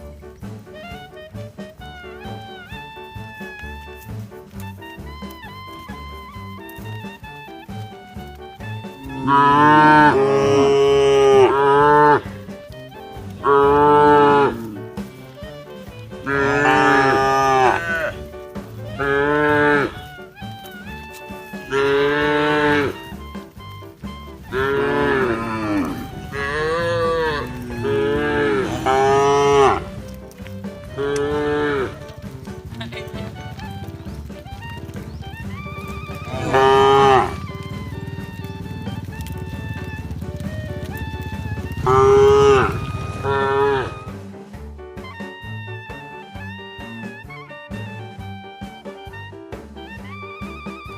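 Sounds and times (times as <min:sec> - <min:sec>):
cow mooing: 0:08.2 - 0:14.8, 0:16.2 - 0:23.7, 0:24.3 - 0:33.9, 0:34.5 - 0:44.2.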